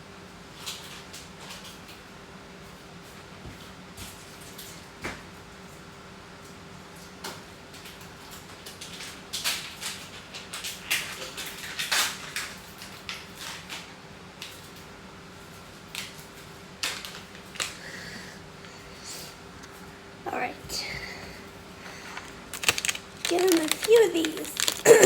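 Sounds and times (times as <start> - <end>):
faint steady hum: 16.8 - 25.0.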